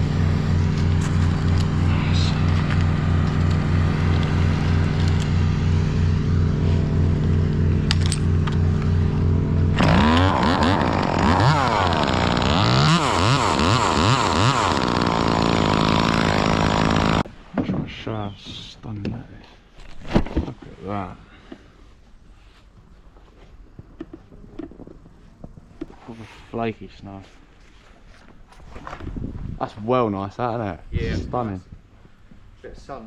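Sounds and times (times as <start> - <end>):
engine running and revving: 0.0 - 17.3.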